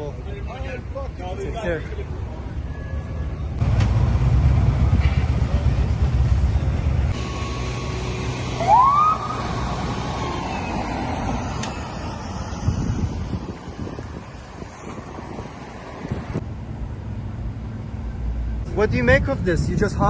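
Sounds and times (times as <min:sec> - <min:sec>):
vehicle engine rumble: 0:00.0 - 0:20.0
police siren whoop: 0:08.6 - 0:14.5.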